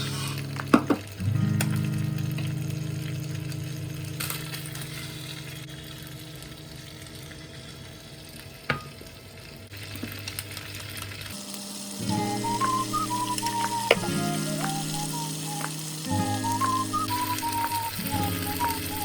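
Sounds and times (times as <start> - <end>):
food sizzling in a pan: 0.0 - 19.0
utensil tapping: 13.4 - 15.0.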